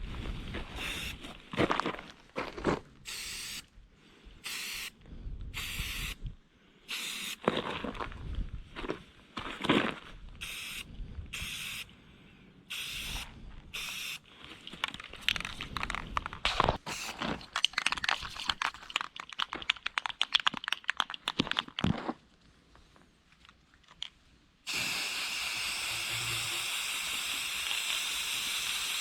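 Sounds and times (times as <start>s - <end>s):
spray paint can spraying: 0.8s - 1.2s, 3.1s - 3.6s, 4.4s - 5.0s, 5.6s - 6.2s, 6.9s - 7.4s, 10.4s - 10.8s, 11.4s - 11.9s, 12.7s - 14.2s, 16.8s - 21.3s, 24.7s - 29.0s.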